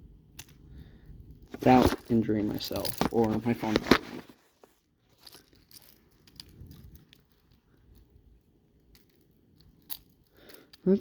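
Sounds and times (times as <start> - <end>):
metal split ring clicks and scrapes: 5.1 - 8.2, 8.8 - 10.8.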